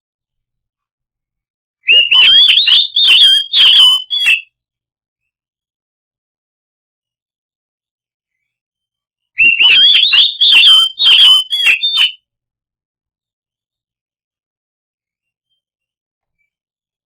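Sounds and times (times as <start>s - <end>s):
songbird whistling and clicking: 1.9s - 4.4s, 9.4s - 12.2s.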